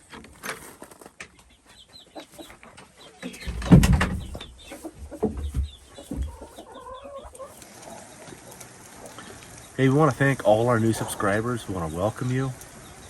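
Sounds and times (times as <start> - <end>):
hens clucking: 1.2 - 13.0
knocks and dull thump: 3.4 - 4.5, 5.1 - 6.4.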